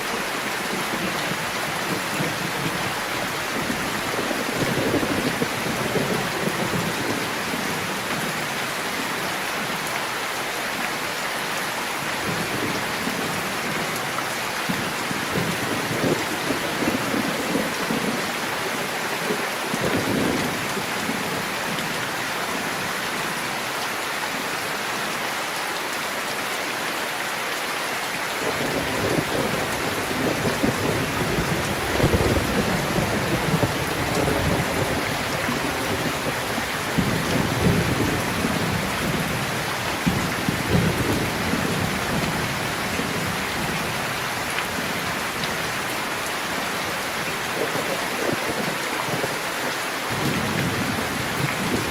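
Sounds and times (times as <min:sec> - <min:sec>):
heavy rain hissing: 0:00.0 - 0:51.9
thunder rumbling: 0:28.4 - 0:43.9, 0:50.1 - 0:51.9.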